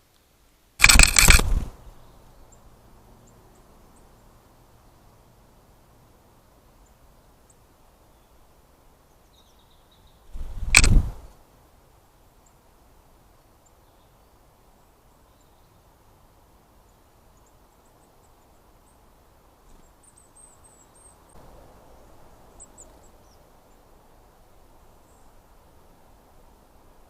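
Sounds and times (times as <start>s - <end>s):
soft rustle: 10.2s - 11.4s
small bird chirping: 19.7s - 21.4s.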